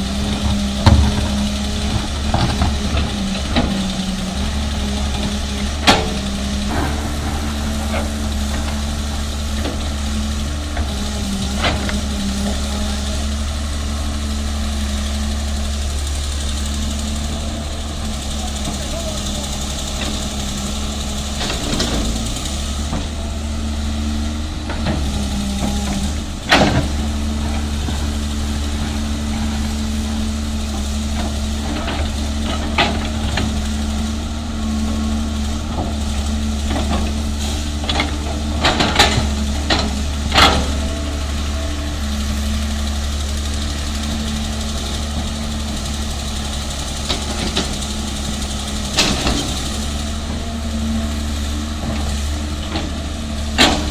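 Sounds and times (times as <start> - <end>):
excavator diesel engine running: 0.0 - 53.9
rock and metal clanking: 5.6 - 10.9.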